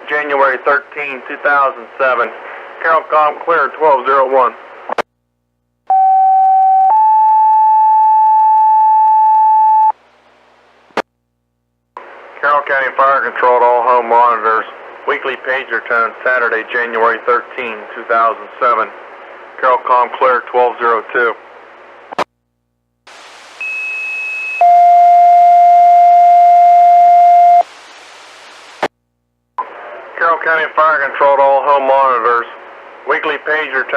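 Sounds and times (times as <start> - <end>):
radio carrier hiss: 0.0 - 5.1, 12.0 - 22.3, 23.1 - 24.8, 27.6 - 28.9, 29.6 - 33.9.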